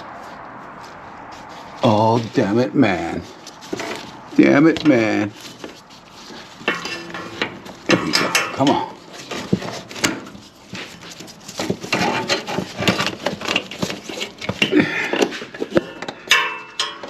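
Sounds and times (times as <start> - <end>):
metal parts clicking and clinking: 6.6 - 10.5, 11.1 - 17.0.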